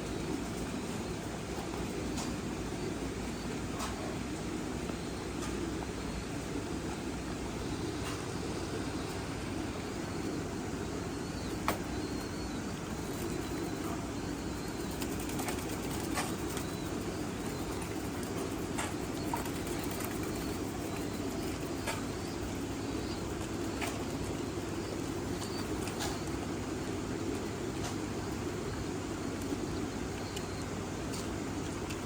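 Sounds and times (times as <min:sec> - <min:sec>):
faint high chirps: 0:07.6 - 0:26.5
pigeons flapping wings: 0:14.7 - 0:22.2.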